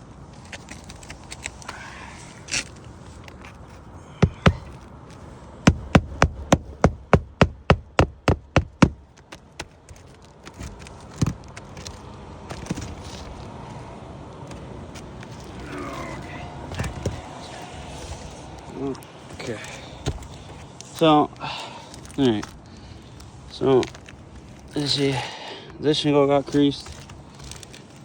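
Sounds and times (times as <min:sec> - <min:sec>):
hammer striking nails: 0:04.2 - 0:04.8, 0:05.7 - 0:09.0.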